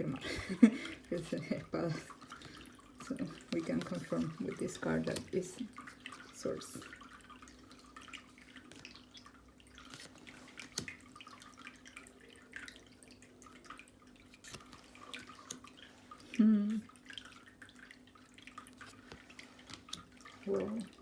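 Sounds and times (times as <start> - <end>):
cards clicking and tapping: 9.9 - 11.0
person humming: 16.4 - 16.9.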